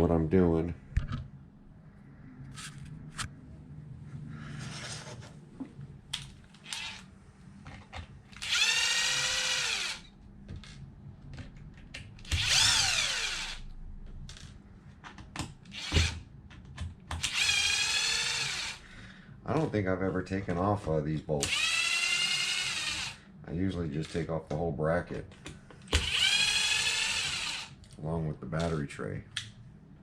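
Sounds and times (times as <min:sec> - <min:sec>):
small electric drill running: 0:06.6 - 0:07.0, 0:08.4 - 0:10.1, 0:12.3 - 0:13.6, 0:15.7 - 0:16.2, 0:17.2 - 0:18.8, 0:21.4 - 0:23.2, 0:25.9 - 0:27.8.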